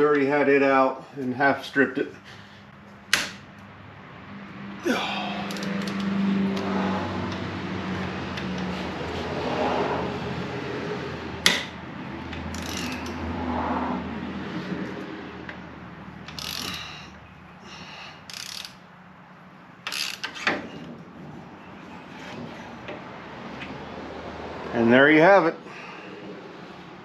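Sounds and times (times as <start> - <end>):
ratchet clicking: 5.4 - 6.7, 12.4 - 13.2, 16.2 - 17.0, 18.2 - 18.8, 19.8 - 20.4.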